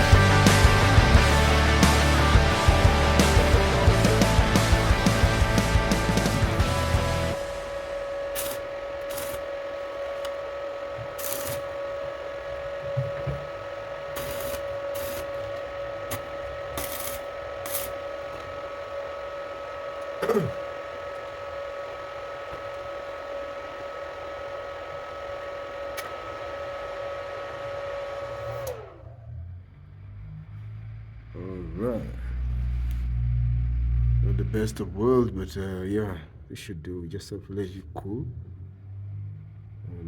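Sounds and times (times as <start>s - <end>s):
small electric motor running: 0.0s - 29.1s.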